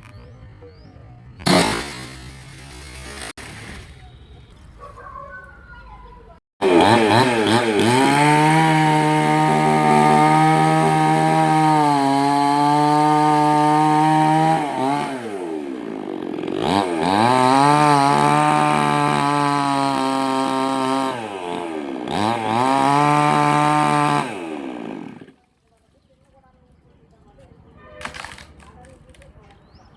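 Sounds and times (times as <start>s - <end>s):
chainsaw cutting wood: 1.4s - 3.8s, 6.6s - 25.4s.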